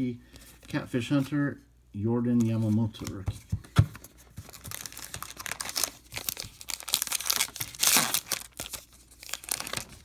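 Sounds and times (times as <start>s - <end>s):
wrapper tearing and crinkling: 4.5s - 10.0s.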